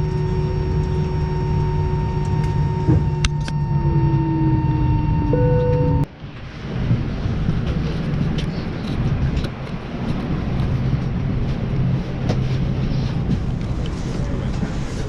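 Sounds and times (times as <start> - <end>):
vehicle rumble from inside: 0.0 - 15.0.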